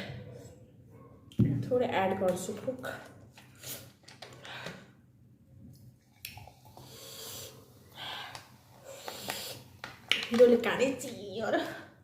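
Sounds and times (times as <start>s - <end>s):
slurping noodle soup: 6.2s - 9.8s
hissing breath: 6.5s - 9.8s
sharp breaths: 6.7s - 9.8s.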